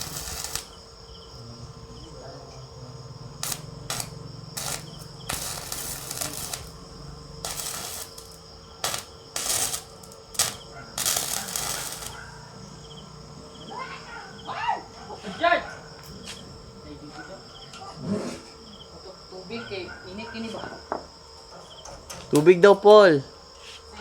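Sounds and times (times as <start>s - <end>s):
welding arc crackling and hissing: 0.0s - 0.9s, 3.4s - 12.3s.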